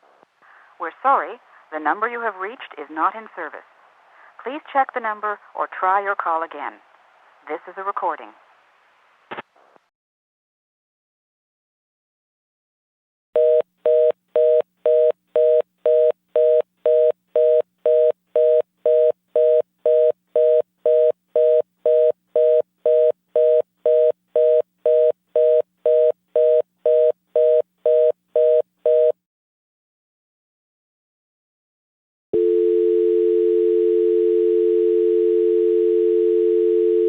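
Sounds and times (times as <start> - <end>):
telephone fast busy tone: 32.4 - 37.0.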